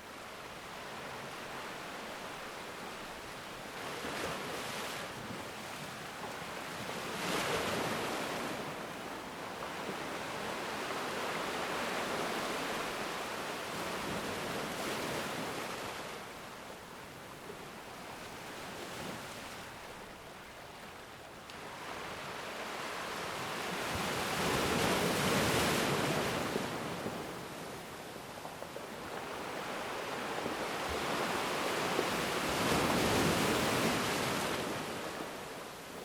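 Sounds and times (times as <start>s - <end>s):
ocean surf breaking on beach: 21.6s - 36.0s.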